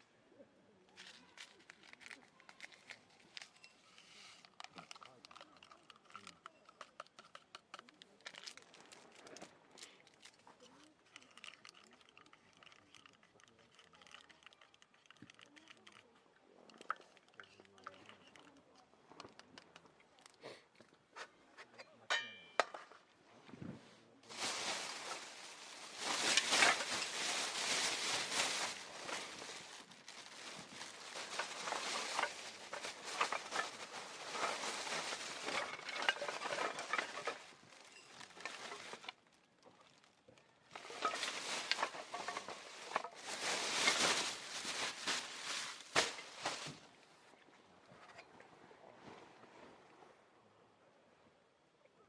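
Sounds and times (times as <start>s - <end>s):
rustling and crackling: 0.9s - 16.0s, 23.5s - 47.0s.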